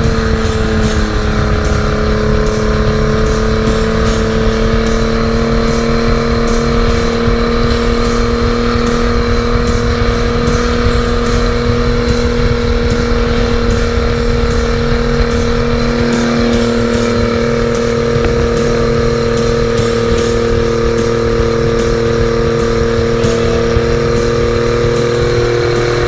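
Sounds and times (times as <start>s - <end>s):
outboard engine running loud: 0.0s - 26.0s.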